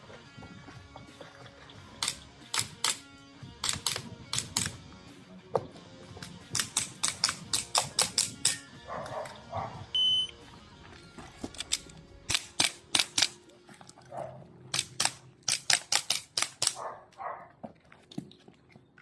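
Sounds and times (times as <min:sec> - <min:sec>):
airsoft gun shots: 0:02.0 - 0:03.0, 0:03.6 - 0:04.7, 0:06.5 - 0:08.6, 0:11.6 - 0:13.4, 0:14.7 - 0:16.8
shot timer beep: 0:09.9 - 0:10.4.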